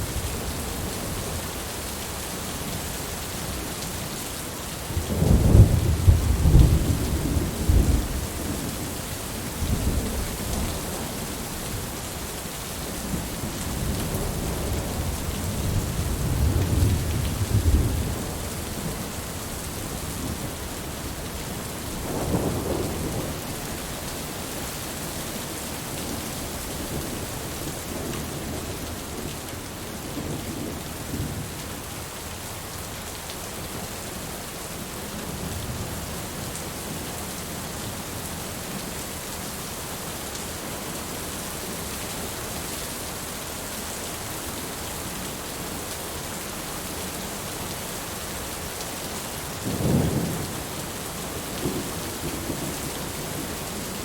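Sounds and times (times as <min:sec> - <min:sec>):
steady rain falling: 0:00.0 - 0:54.0
thunder rumbles: 0:05.0 - 0:08.9.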